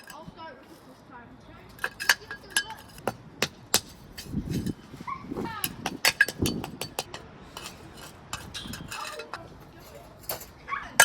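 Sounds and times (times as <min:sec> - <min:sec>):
pavers clinking together: 0:00.0 - 0:00.8, 0:01.6 - 0:11.0
dull thumps: 0:01.8 - 0:10.5.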